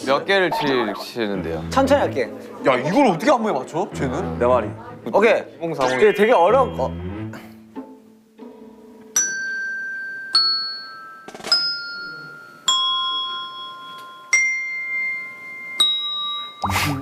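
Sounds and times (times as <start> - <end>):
tuned bells melody: 5.8 - 7.4, 9.2 - 17.0.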